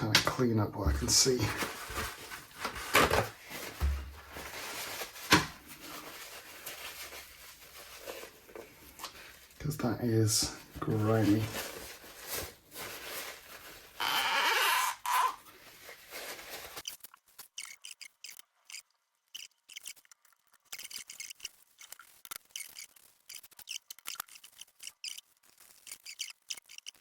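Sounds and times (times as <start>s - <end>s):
faint squeaks and ticks: 16.8s - 27.0s.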